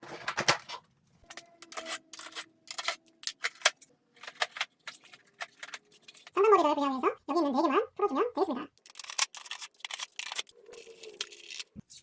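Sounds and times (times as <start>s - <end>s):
plastic parts clicking: 0.0s - 6.4s, 8.7s - 11.8s.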